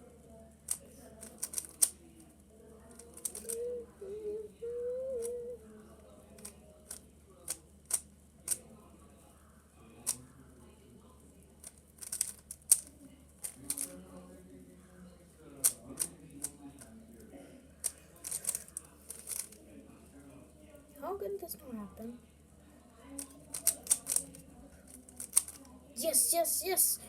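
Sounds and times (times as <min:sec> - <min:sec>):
puzzle cube plastic clicks: 0:00.7 - 0:02.0, 0:02.9 - 0:03.7, 0:07.9 - 0:08.6, 0:11.6 - 0:14.0, 0:15.6 - 0:16.5, 0:17.8 - 0:19.6, 0:23.2 - 0:25.6
person humming: 0:03.4 - 0:05.6.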